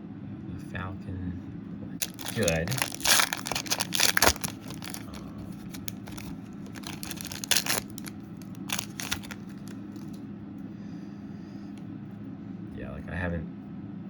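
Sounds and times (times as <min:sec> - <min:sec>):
trading cards flicking and rustling: 0:02.0 - 0:10.2.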